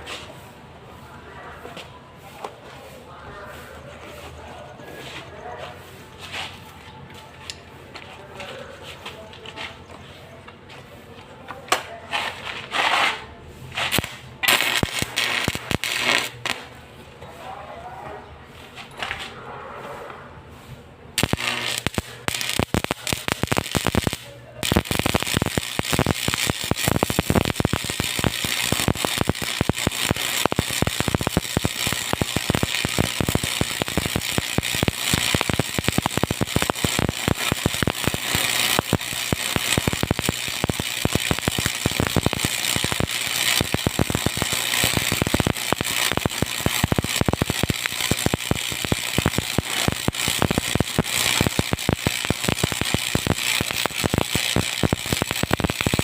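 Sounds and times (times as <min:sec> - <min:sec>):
welding arc crackling: 0:11.7 - 0:16.8, 0:21.2 - 0:56.0.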